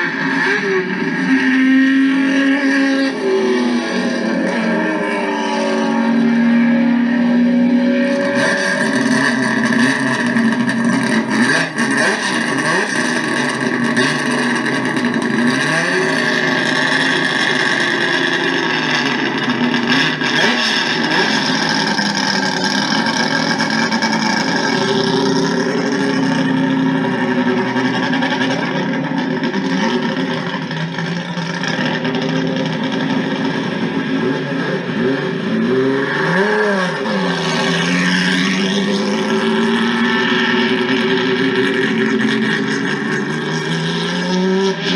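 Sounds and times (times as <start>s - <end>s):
race car engines revving: 0.0s - 44.9s.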